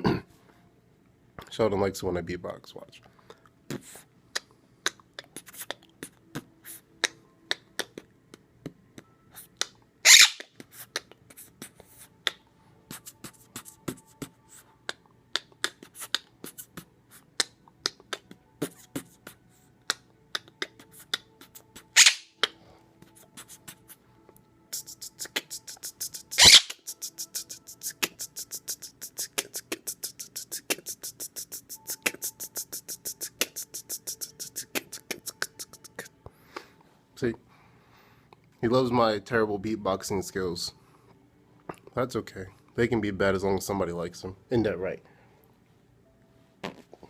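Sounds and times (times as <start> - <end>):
man beatboxing: 3.7 - 8.8, 10.8 - 11.2, 14.9 - 22.2, 24.7 - 36.2.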